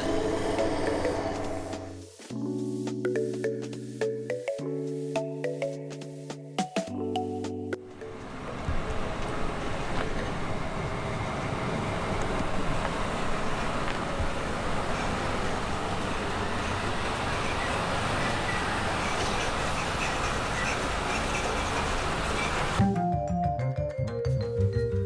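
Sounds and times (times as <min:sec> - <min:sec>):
granulator machine running: 0:08.2 - 0:22.8.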